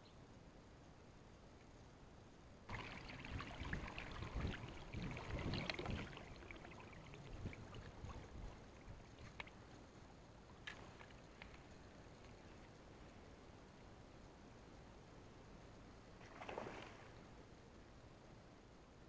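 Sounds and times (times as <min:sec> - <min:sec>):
water splashing and sloshing: 0:02.7 - 0:09.7, 0:10.5 - 0:12.7, 0:16.2 - 0:17.2.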